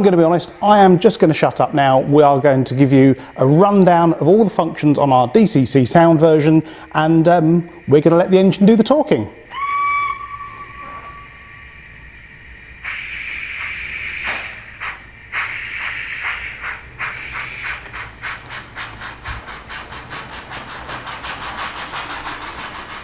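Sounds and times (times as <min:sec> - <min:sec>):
steam hissing: 0:00.0 - 0:23.0
steam locomotive exhaust chuffs: 0:00.0 - 0:23.0
train whistle: 0:09.4 - 0:14.8.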